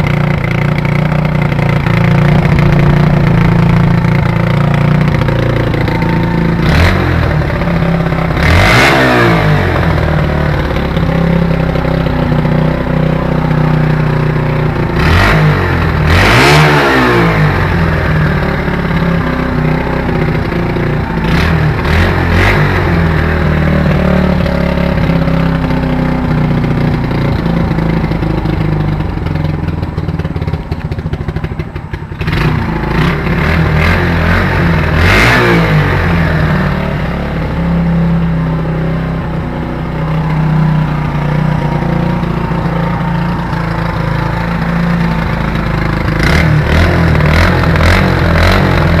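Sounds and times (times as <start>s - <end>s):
motorcycle engine revving: 0.0s - 49.0s.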